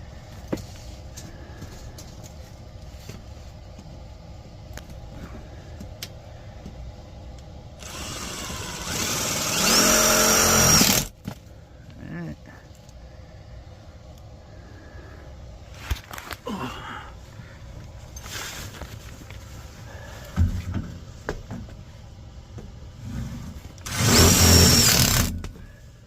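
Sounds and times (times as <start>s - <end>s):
cordless drill motor spinning: 7.8s - 11.1s, 23.8s - 25.4s.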